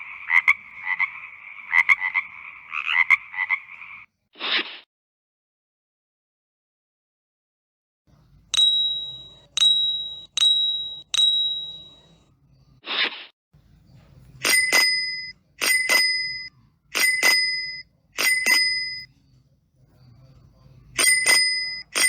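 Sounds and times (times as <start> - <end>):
bright bell struck: 8.6 - 12.0
metallic bell dings: 8.6 - 12.2.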